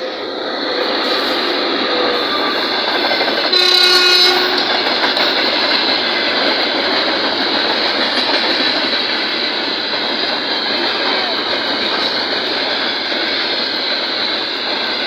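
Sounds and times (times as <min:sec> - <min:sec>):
train horn: 0:02.1 - 0:02.8, 0:03.4 - 0:04.9
locomotive wheels knocking on rails: 0:02.7 - 0:15.0.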